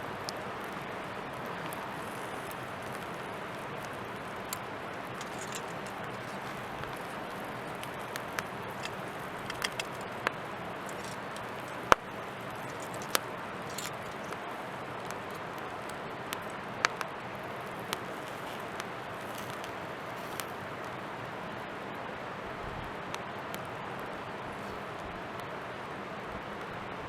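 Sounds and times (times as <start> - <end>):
campfire crackling: 0.0 - 27.0.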